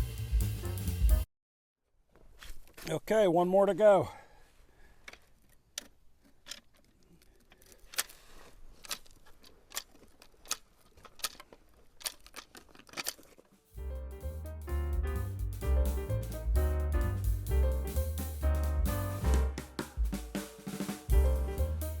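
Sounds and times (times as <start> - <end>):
piano music: 13.8 - 22.0.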